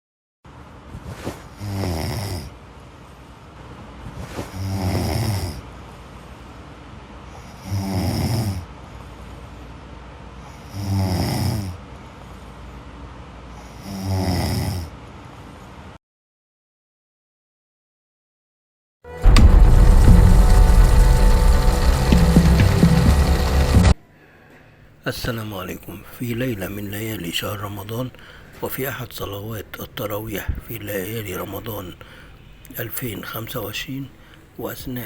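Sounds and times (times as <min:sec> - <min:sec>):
man snoring loudly: 0:01.6 - 0:02.5, 0:07.6 - 0:08.6, 0:10.7 - 0:11.8, 0:13.8 - 0:14.9.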